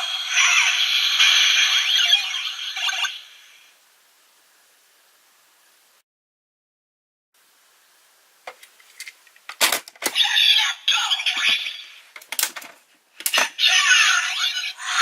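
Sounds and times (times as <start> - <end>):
tinny electronic sound effect: 0.0 - 3.7.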